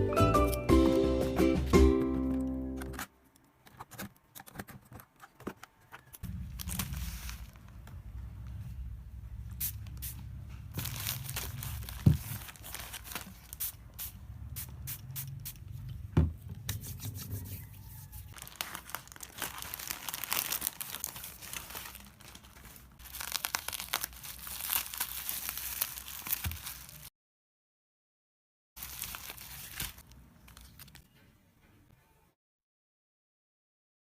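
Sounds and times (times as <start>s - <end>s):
crinkling handling noise: 2.0s - 8.9s, 9.6s - 14.1s, 15.5s - 27.1s, 28.8s - 31.4s.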